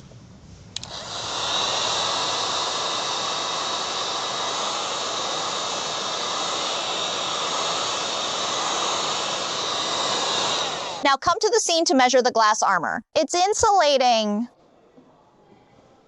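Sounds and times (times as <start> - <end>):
blower switch click: 0.8 - 1.1
electric blower whining: 0.8 - 11.0.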